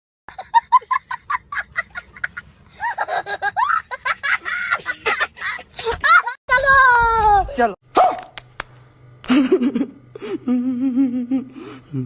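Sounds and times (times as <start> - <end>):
wavering laugh: 0.3 - 6.4, 9.3 - 12.0.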